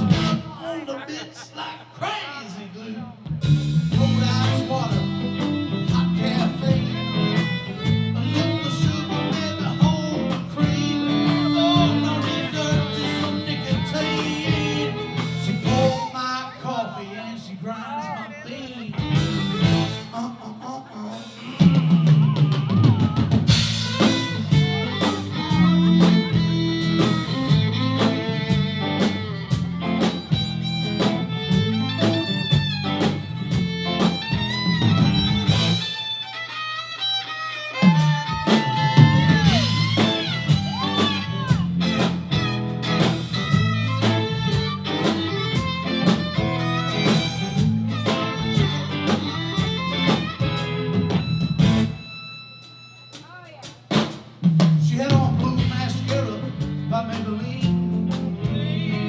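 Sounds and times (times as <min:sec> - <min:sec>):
bass: 0:00.0 - 0:00.6, 0:03.3 - 0:16.2, 0:19.0 - 0:20.2, 0:21.6 - 0:36.1, 0:37.8 - 0:52.5, 0:54.8 - 0:59.0
drum kit: 0:00.0 - 0:00.6, 0:03.2 - 0:16.1, 0:19.0 - 0:20.2, 0:21.2 - 0:36.2, 0:37.5 - 0:59.0
guitar: 0:00.0 - 0:59.0.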